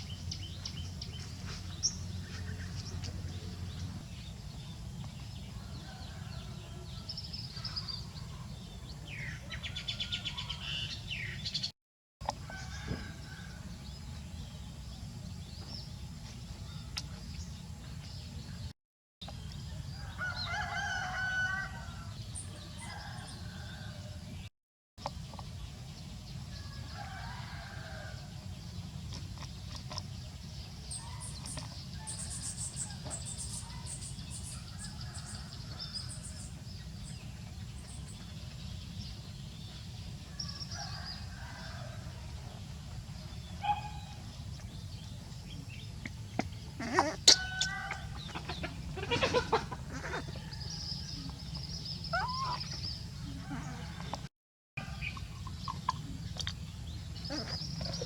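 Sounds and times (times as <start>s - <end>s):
roosters crowing: 5.5s - 7.4s, 12.2s - 13.9s, 19.9s - 24.3s, 26.6s - 28.5s, 40.3s - 42.6s, 46.7s - 55.2s
chickens clucking: 46.0s - 50.6s.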